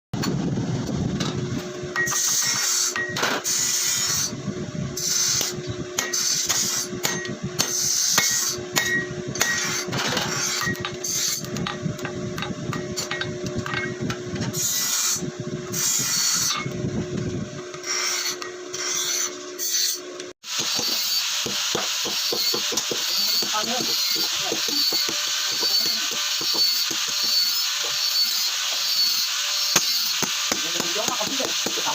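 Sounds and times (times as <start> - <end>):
file rasping across steel: 2.0 - 4.4, 5.0 - 11.4, 14.5 - 16.7, 17.8 - 31.9.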